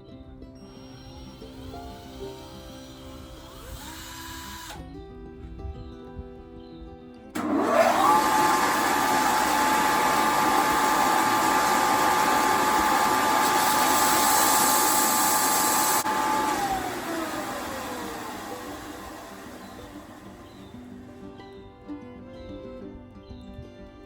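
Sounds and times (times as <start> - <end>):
power tool motor whining: 0.6 - 5.0, 7.4 - 21.0.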